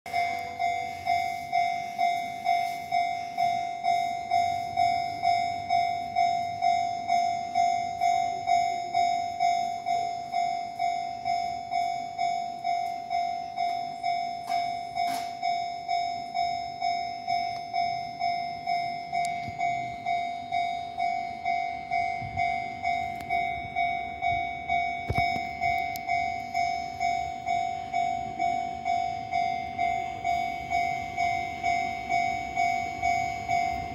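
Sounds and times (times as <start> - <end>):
level-crossing alarm bell dinging: 0.1 - 33.9.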